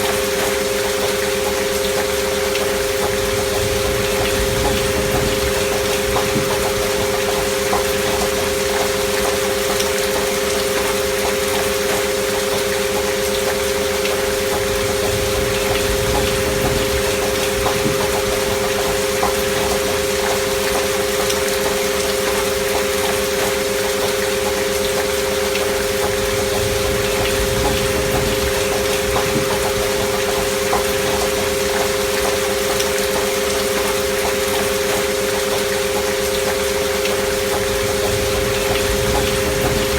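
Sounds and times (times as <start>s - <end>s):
rain with drop ticks: 0.0s - 39.9s
steady sine tones: 2.0s - 9.8s, 13.8s - 21.3s, 25.1s - 39.9s.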